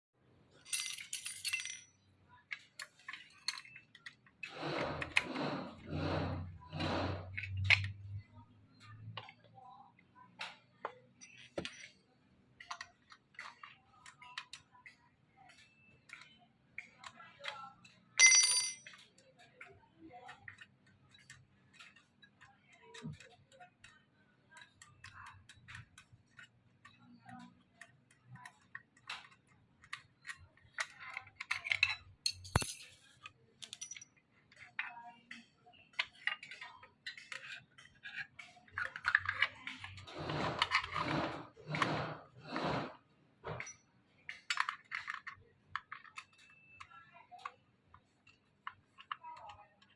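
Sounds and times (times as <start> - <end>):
ringing metallic clink: 18.2 - 18.9, 32.3 - 33.0.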